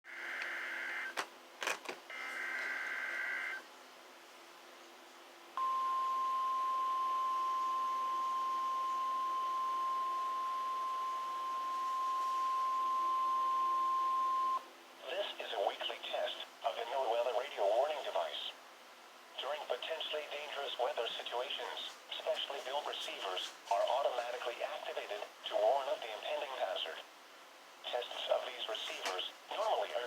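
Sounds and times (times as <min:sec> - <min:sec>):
steady warning alarm tone: 0:05.6 - 0:14.6.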